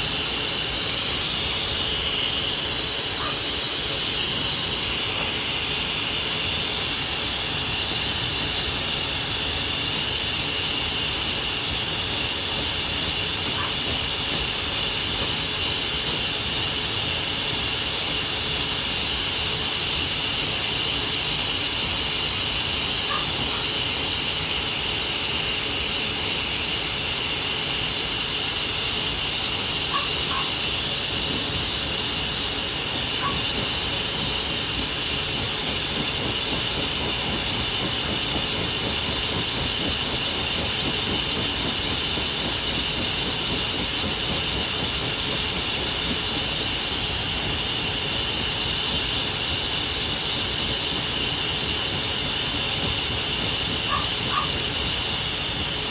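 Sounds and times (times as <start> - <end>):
grooming dryer blowing air: 0.0 - 55.9
high whine: 21.0 - 55.9.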